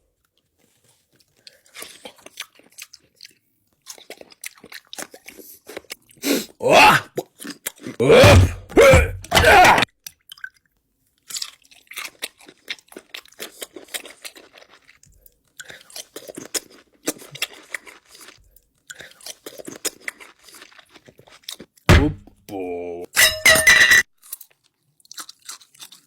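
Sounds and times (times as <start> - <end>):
person chewing crunchy food: 0.3 - 10.6, 11.2 - 22.7, 24.2 - 26.0
short loud voice-like sound: 6.6 - 7.1, 8.0 - 9.8, 21.9 - 23.1.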